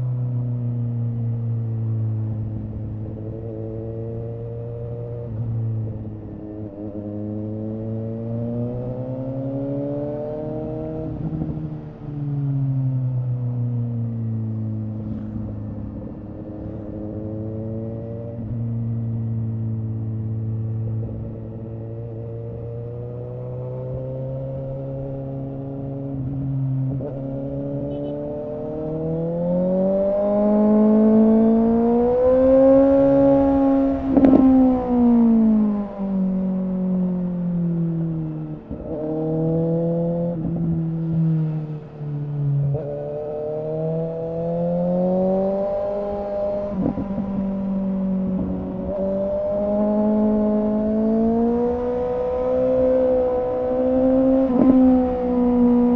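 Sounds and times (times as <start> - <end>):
motorcycle engine revving: 20.3 - 55.9.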